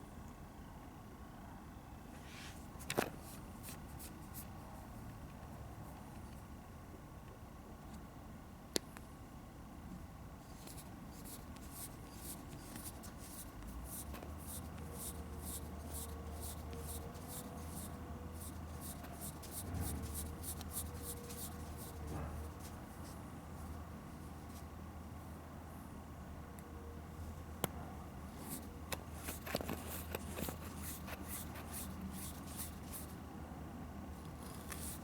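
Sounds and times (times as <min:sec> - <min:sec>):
scratchy strokes: 0:10.5 - 0:23.2, 0:28.4 - 0:33.1, 0:34.4 - 0:35.0.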